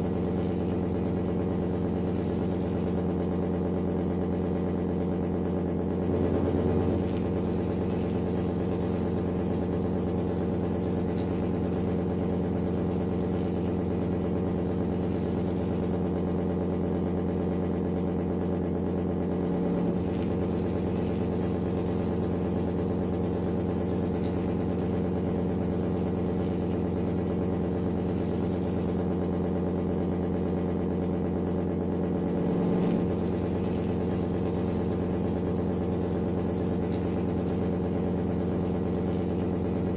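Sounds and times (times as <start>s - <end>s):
low engine idle: 0.0s - 39.9s.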